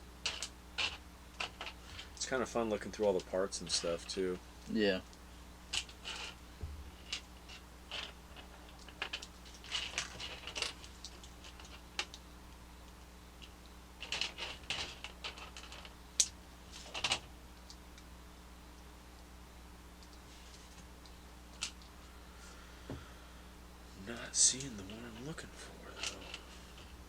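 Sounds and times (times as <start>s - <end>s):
plastic pieces clicking and rattling: 0.2s - 1.8s, 7.0s - 12.2s, 14.0s - 17.3s, 25.9s - 26.8s.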